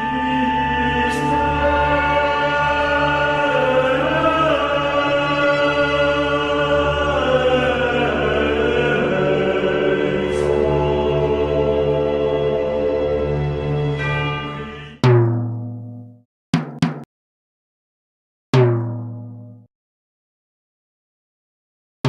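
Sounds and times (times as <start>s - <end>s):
choir-like chords: 0.0s - 15.1s.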